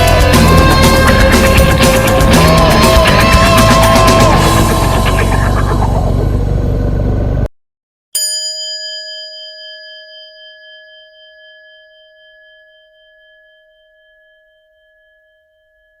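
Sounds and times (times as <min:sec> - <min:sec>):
rock music: 0:00.0 - 0:06.4
bell-like chime ringing: 0:08.2 - 0:16.0.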